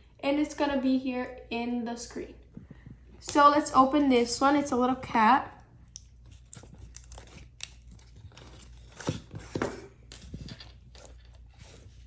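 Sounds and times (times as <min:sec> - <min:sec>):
packaging torn and crinkled: 0:06.2 - 0:09.1.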